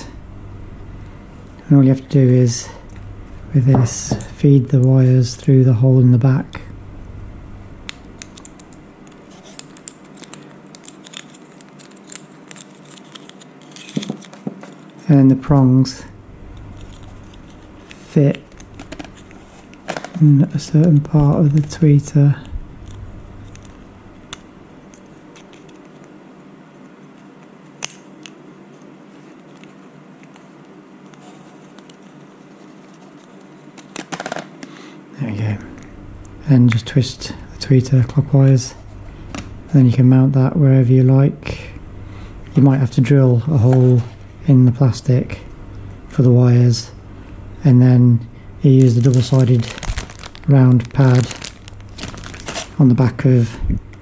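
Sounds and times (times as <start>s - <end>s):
low steady hum: 0.0s - 54.0s
handling small plastic parts: 8.2s - 15.0s, 16.5s - 20.2s, 22.8s - 26.1s, 48.7s - 52.9s
plastic mount and wires rustling: 48.8s - 52.8s.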